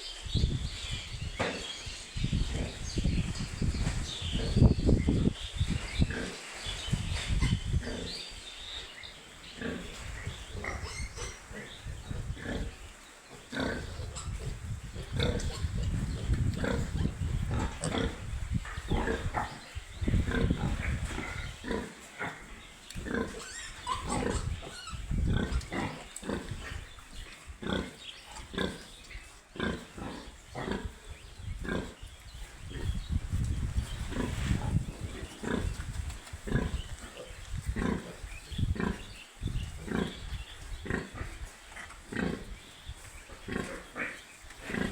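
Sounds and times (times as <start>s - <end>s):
piglets grunting and squealing: 9.6s - 33.0s, 33.7s - 42.6s, 43.3s - 44.9s.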